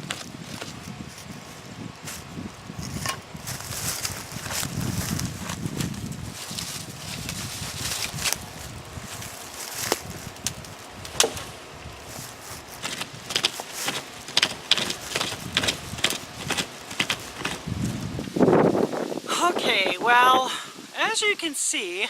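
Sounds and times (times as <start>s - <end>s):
wood cracking and crackling: 0.0s - 18.8s
pocket chainsaw rasping through wood: 2.9s - 18.3s
wood snapping: 9.6s - 18.3s.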